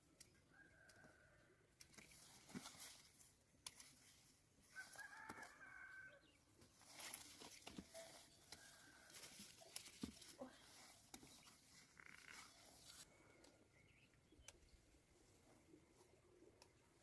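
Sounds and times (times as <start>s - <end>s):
faint clicks and rustles: 6.5s - 13.6s.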